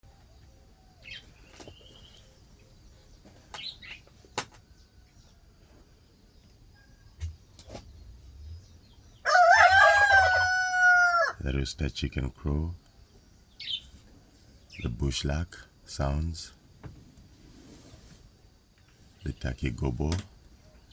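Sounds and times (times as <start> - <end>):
small birds chirping: 0.1 - 10.5, 11.1 - 20.9
rooster crowing: 9.2 - 11.4.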